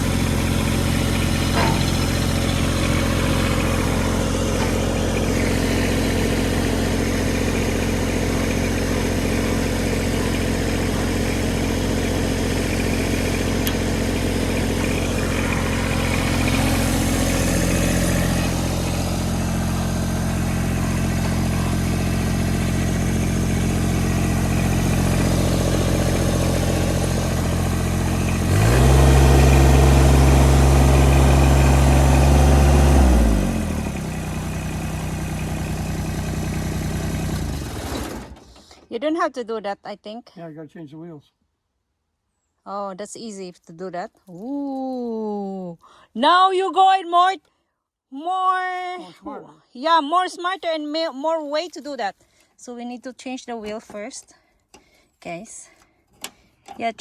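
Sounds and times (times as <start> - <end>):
tractor diesel engine idling: 0.0 - 38.8.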